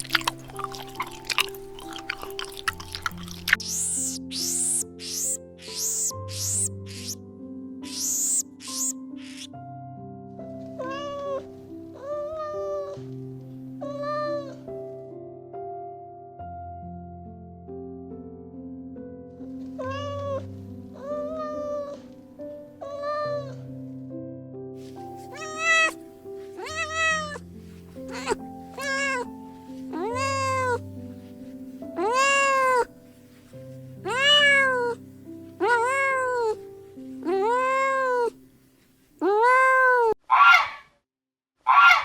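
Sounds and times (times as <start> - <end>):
harsh animal calls: 0.0 - 7.2, 7.8 - 9.5, 25.2 - 26.0, 26.6 - 27.4, 28.1 - 29.3, 30.0 - 30.8, 32.0 - 32.9, 34.1 - 35.0, 39.2 - 40.8, 41.7 - 42.0
soft piano music: 0.0 - 39.0
cat meowing: 0.1 - 7.2, 19.8 - 20.4, 25.2 - 26.0, 26.6 - 27.4, 28.0 - 30.8, 32.0 - 32.9, 34.0 - 35.0, 35.6 - 36.6, 37.2 - 38.4, 39.2 - 40.8.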